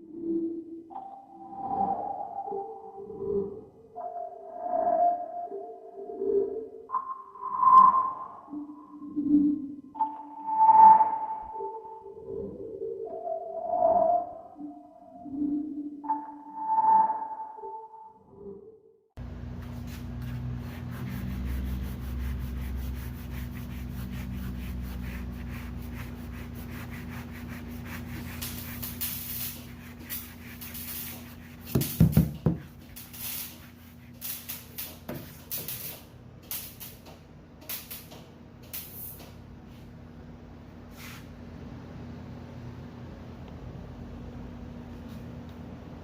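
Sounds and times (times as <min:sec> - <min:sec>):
machine hum: 0:19.2 - 0:35.4, 0:39.4 - 0:46.0
sanding strokes on metal: 0:20.2 - 0:35.0.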